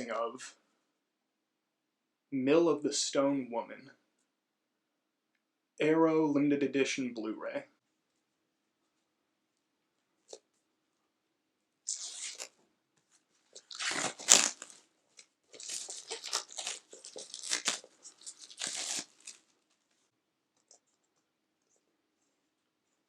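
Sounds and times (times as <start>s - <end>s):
plastic shrink-wrap tearing: 11.9s - 12.5s, 13.6s - 19.5s.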